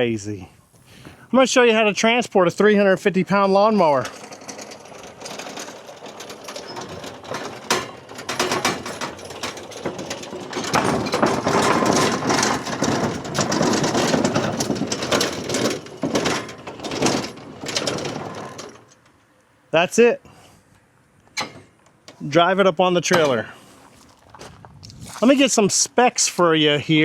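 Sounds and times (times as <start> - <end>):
tracked mower running and rattling: 2.8 - 19.0
sharp metal clanks and knocks: 4.0 - 19.0, 21.4 - 22.2.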